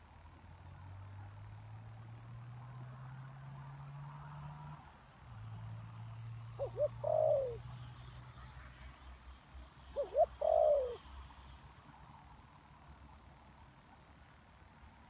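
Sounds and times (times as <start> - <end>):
dove cooing: 6.6 - 7.7, 9.9 - 11.1.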